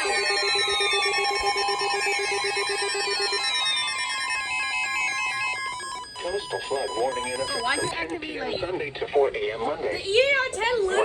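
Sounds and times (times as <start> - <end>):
rapid beeping tone: 0.0 - 7.9
tones sliding down in pitch: 0.0 - 7.9.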